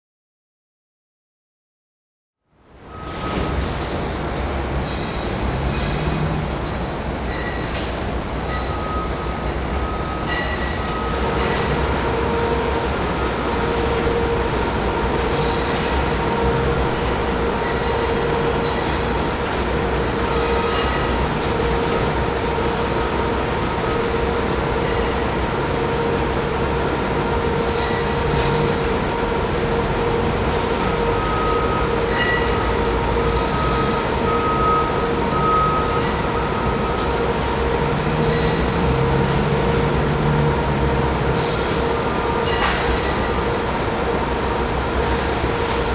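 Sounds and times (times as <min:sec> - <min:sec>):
constant machine whine: 0:02.7 - 0:45.9
machinery rumble: 0:03.2 - 0:45.9.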